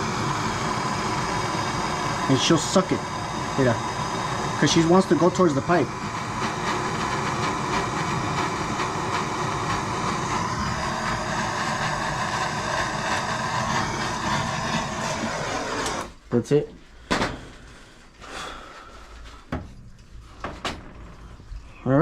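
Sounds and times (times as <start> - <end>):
gas torch flame hissing: 0.0 - 16.2.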